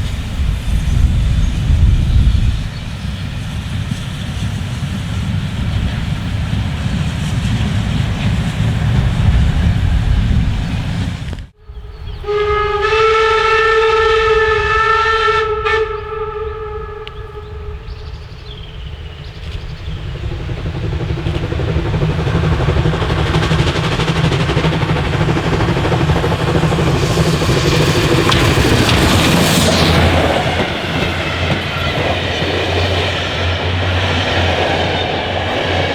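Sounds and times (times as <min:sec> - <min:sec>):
train wheels rumbling on rails: 0:00.0 - 0:35.9
steam locomotive whistle: 0:11.6 - 0:18.7.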